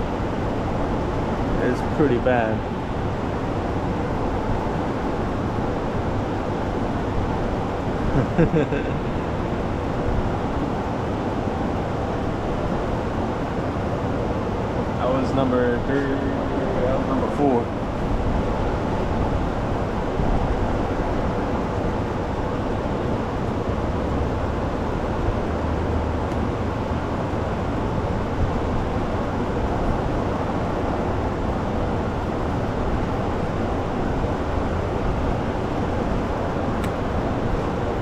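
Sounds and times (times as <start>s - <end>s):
steady low rumbling: 0.0s - 38.0s.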